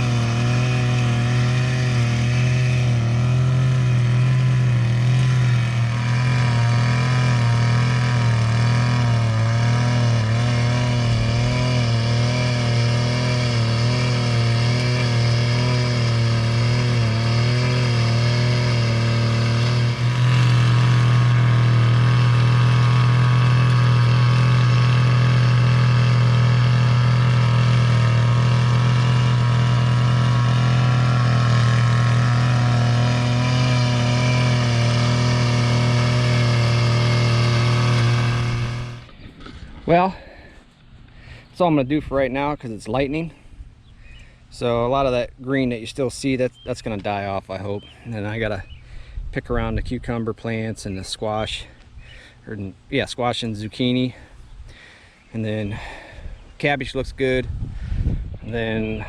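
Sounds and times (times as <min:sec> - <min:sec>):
two-stroke cultivator engine running: 0:00.0 - 0:40.4.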